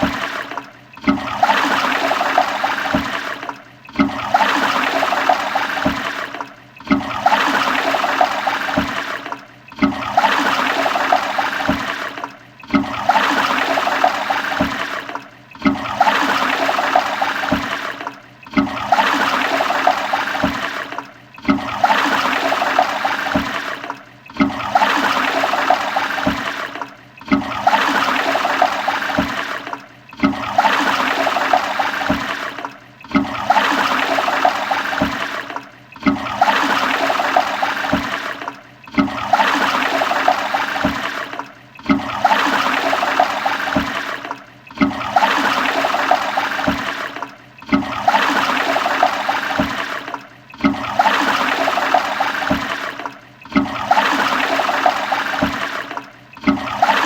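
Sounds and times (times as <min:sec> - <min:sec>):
toilet flushing: 0:00.0 - 0:57.0.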